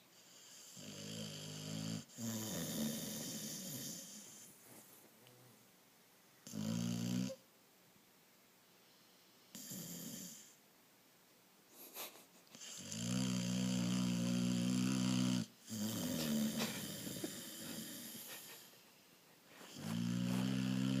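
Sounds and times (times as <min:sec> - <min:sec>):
soft breathy snore: 0:00.1 - 0:04.5, 0:08.9 - 0:10.6, 0:12.6 - 0:18.7, 0:19.6 - 0:21.0
loud buzzing snore: 0:00.3 - 0:04.3, 0:06.5 - 0:07.4, 0:09.6 - 0:10.6, 0:12.6 - 0:18.4, 0:19.8 - 0:21.0
short snort: 0:11.9 - 0:18.8, 0:19.6 - 0:21.0.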